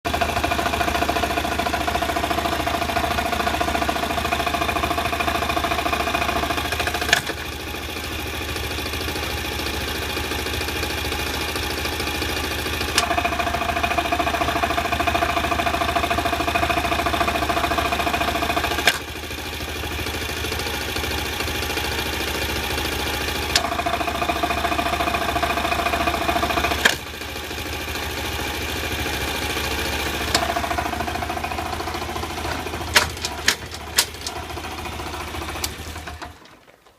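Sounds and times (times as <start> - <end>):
motorcycle engine idling: 0.1 - 36.4
gear-shift pedal click: 32.4 - 34.4.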